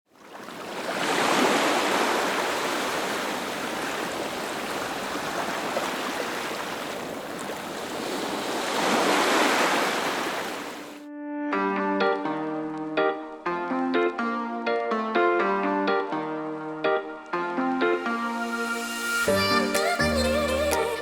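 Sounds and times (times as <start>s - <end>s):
ocean waves washing in: 0.3s - 11.0s.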